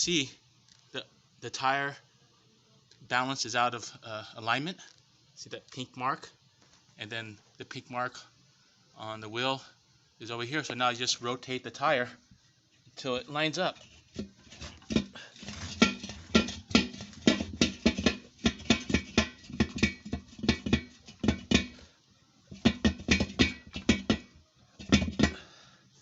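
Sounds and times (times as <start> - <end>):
rubber tire knocking on metal rim: 14.2 - 21.8, 22.5 - 25.4.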